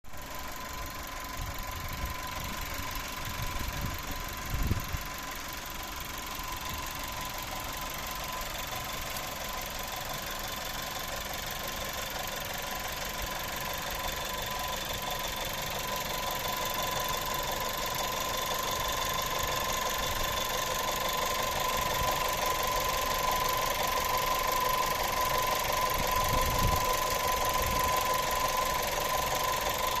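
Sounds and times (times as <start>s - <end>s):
car engine running: 0.1s - 30.0s.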